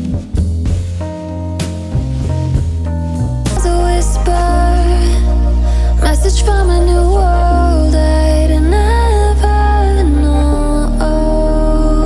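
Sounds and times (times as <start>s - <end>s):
song with guitar bass and drums: 0.0s - 7.8s.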